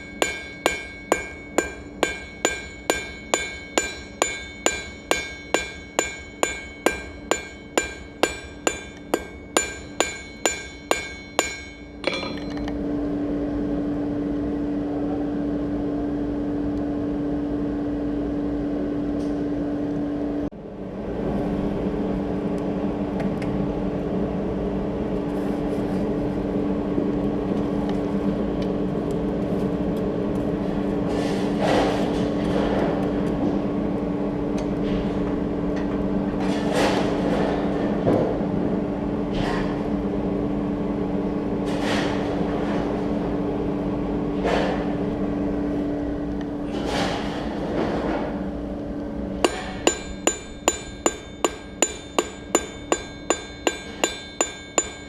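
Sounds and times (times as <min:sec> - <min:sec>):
hammer striking steel on anvil: 0:00.0 - 0:12.8, 0:49.4 - 0:55.0
steady drone with low hum: 0:00.0 - 0:55.0.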